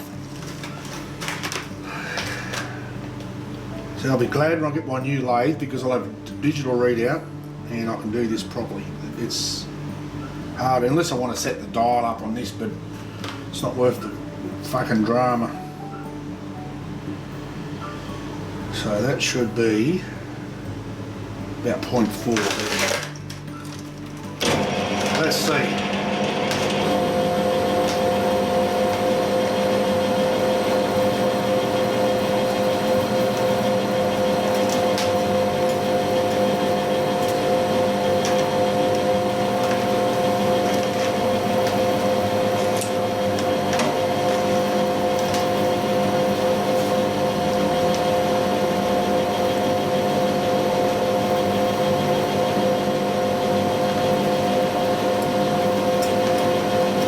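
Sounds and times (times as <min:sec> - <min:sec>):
metal lathe whining: 0:24.4 - 0:57.0.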